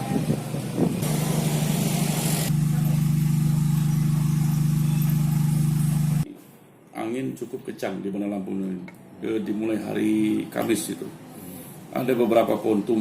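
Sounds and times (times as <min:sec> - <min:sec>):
engine running with flutter: 0:00.0 - 0:06.2.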